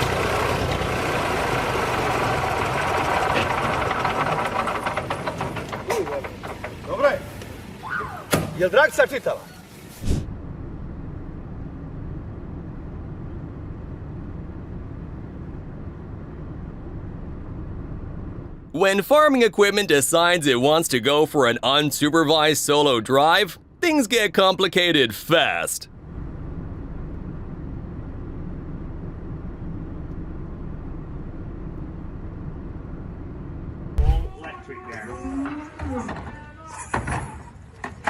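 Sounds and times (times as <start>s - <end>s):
tractor engine running: 0.0s - 7.8s
vehicle engine rumble: 0.0s - 19.2s, 25.8s - 34.5s.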